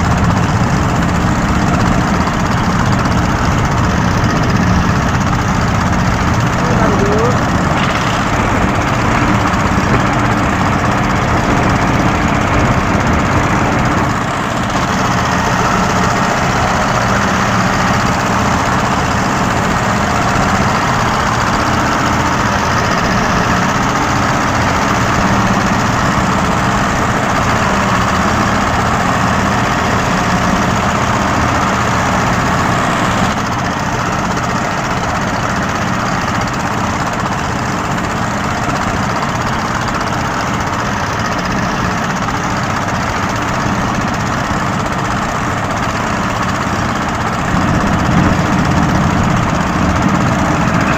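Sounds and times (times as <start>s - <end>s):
boat engine running: 0.0s - 50.9s
wind and water rushing: 7.4s - 30.4s.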